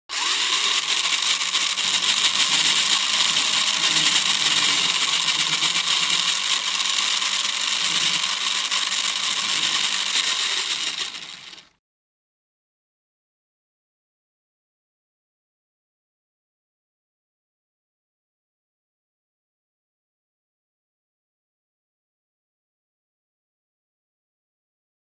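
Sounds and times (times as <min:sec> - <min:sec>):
toy car motor whirring: 0:00.1 - 0:11.8.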